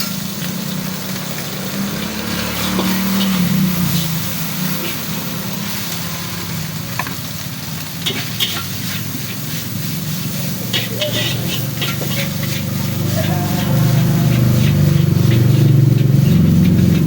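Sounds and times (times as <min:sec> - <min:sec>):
food sizzling in a wok: 0:00.0 - 0:17.0
spatula clinking against wok: 0:08.0 - 0:17.0.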